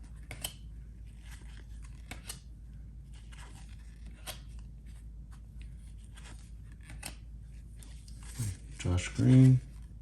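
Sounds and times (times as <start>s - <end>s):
trading cards scraping and snapping: 0.0s - 2.5s, 3.1s - 4.7s, 5.6s - 9.9s.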